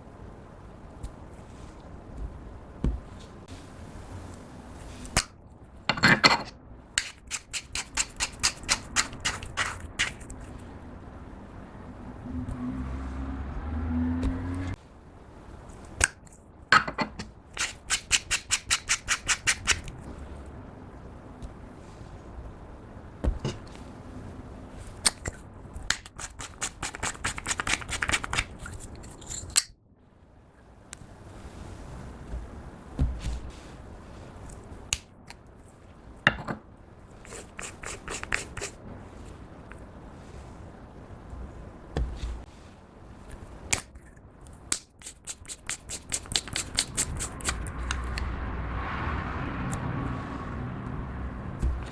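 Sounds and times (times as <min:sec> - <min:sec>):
steady low hum: 0:09.1 - 0:17.6
sharp clicks and snaps: 0:43.7 - 0:48.3.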